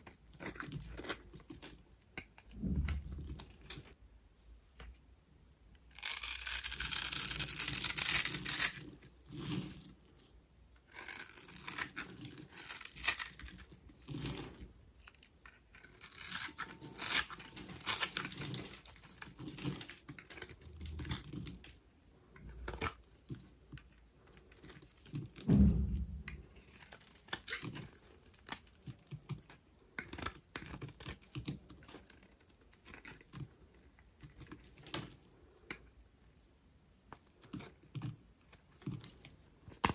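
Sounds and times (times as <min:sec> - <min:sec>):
knife cutting dry soap: 0:00.0 - 0:02.6, 0:06.0 - 0:10.2, 0:10.9 - 0:21.8, 0:26.6 - 0:33.4
dull knock: 0:25.5 - 0:26.4.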